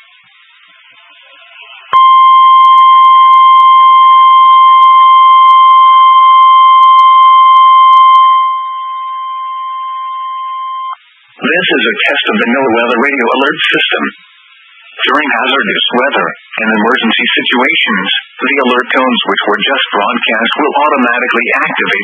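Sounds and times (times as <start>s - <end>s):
high pure alarm tone: 0.8s - 16.3s.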